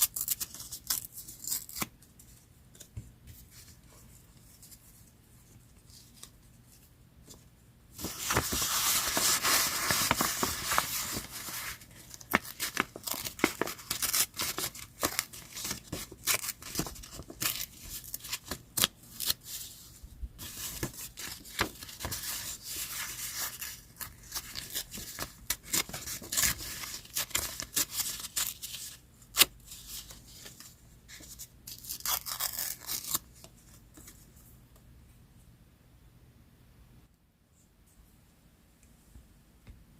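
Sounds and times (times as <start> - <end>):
paper rustling: 8.0 - 34.2.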